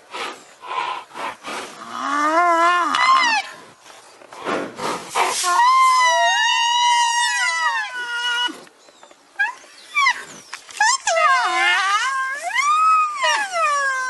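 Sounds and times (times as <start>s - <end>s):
rhinoceros squealing call: 9.4s - 14.0s.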